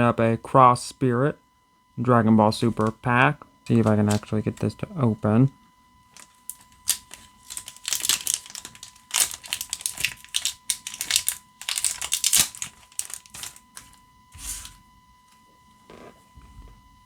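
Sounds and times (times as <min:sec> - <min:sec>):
foil wrapper crinkling: 0:03.8 - 0:04.3, 0:06.1 - 0:14.8.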